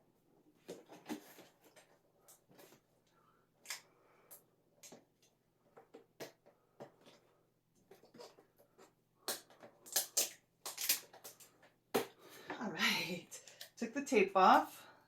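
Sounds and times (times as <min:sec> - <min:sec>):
packing tape tearing: 0:09.2 - 0:11.6
scratching at packing tape: 0:09.2 - 0:11.6.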